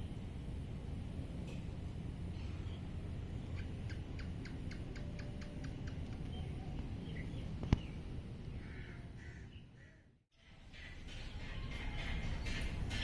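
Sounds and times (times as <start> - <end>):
outdoor background rumble: 0.0 - 13.0
bird chirping: 2.3 - 10.0.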